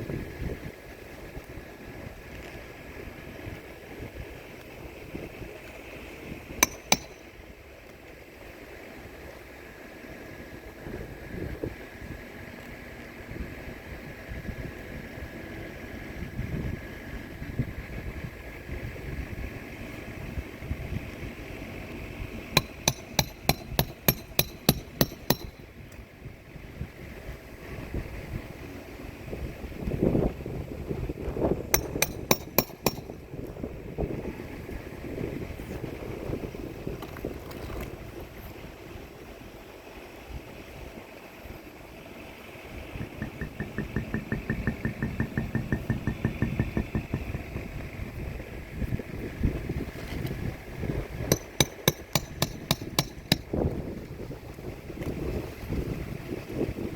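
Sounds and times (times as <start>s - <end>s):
wind rumble on microphone: 0.0s - 39.6s, 40.2s - 56.9s
hammer blows: 6.6s - 7.3s, 22.6s - 25.6s, 31.8s - 33.2s, 43.0s - 47.4s, 51.3s - 53.6s.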